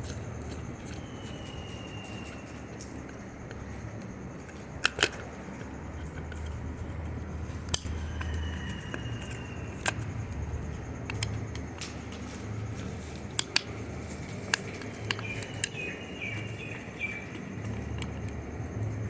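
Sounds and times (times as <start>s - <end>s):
low steady hum: 0.0s - 19.0s
clicks and taps of small parts: 4.4s - 6.6s, 13.2s - 15.8s.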